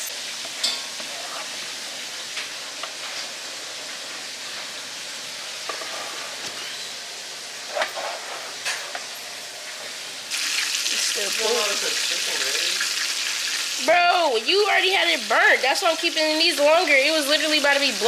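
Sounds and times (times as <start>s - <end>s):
chicken sizzling in hot oil: 10.3s - 18.0s.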